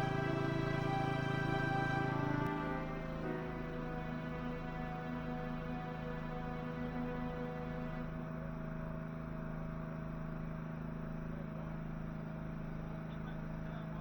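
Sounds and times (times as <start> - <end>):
engine hum with low pulsing: 0.0 - 14.0.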